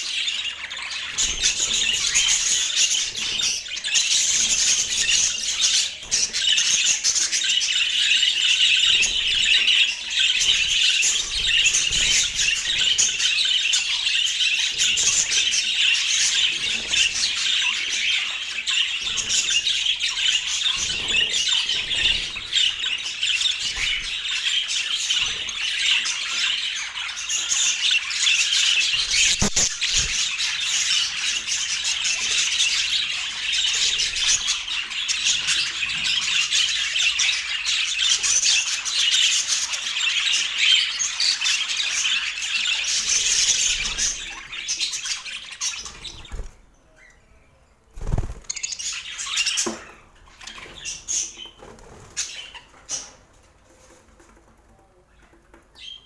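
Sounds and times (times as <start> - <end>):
budgerigars chattering: 0.0 - 46.6, 48.0 - 53.2.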